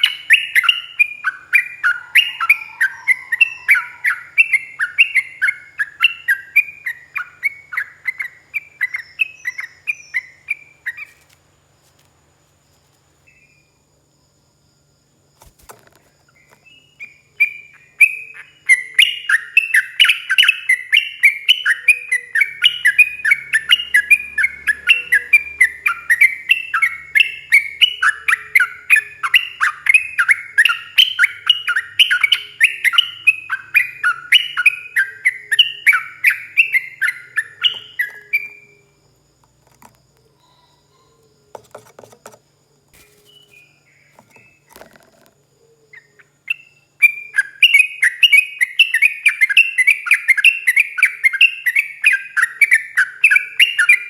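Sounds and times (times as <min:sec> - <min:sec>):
bird singing chattering notes: 0:00.0 - 0:11.1, 0:16.3 - 0:38.9
short bird calls: 0:00.0 - 0:11.2.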